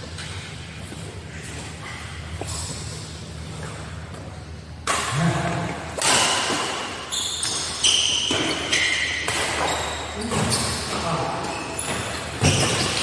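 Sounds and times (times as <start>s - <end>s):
shoes squeaking on court floor: 6.6s - 13.0s.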